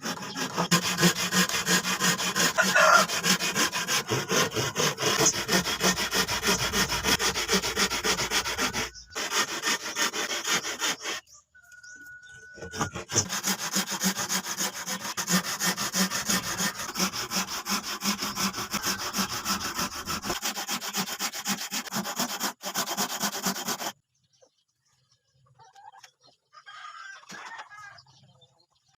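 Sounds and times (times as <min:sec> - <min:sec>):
abrasive tool rubbing on wood: 0:00.0 - 0:11.3, 0:12.6 - 0:24.0.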